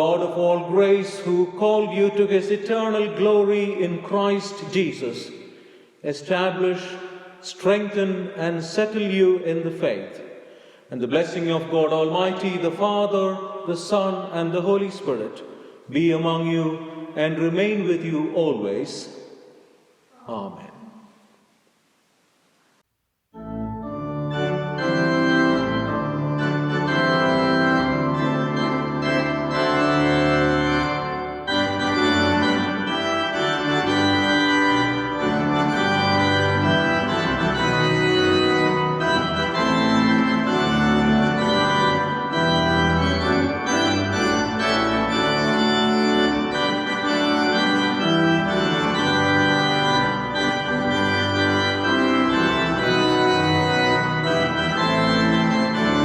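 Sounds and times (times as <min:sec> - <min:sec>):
church organ playing chords: 0:00.0 - 0:05.6, 0:11.0 - 0:15.2, 0:23.4 - 0:56.0.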